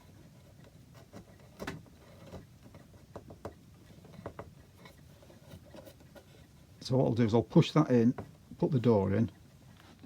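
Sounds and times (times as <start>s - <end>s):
faint clicks and taps: 0.4s - 6.5s.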